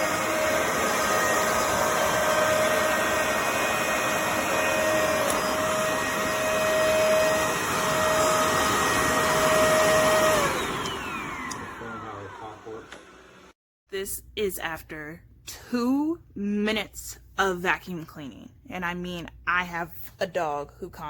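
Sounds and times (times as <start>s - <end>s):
upright vacuum running: 0.0s - 13.5s.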